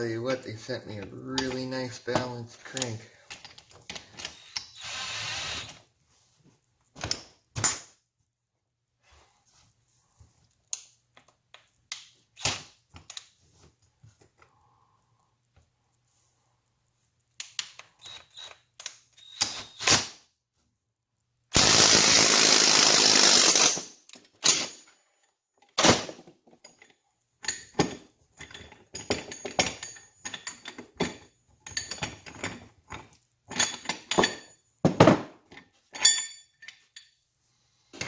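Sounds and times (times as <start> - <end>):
power tool running: 21.6 - 23.8
metal tools clinking on workbench: 33.5 - 35.3, 35.9 - 37.1.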